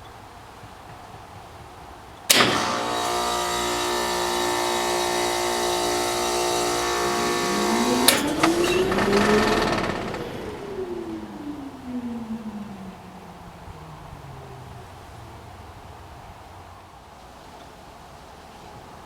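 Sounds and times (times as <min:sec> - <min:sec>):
sharp click: 0:02.3 - 0:10.8
heat pump humming: 0:02.3 - 0:13.7
tone rising and falling: 0:02.4 - 0:14.3.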